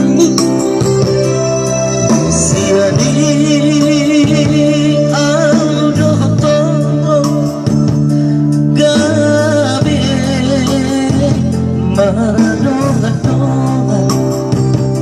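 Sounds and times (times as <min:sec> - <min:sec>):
band with guitar: 0:00.0 - 0:15.0
vocal trio singing in harmony: 0:02.2 - 0:07.2, 0:08.8 - 0:14.5.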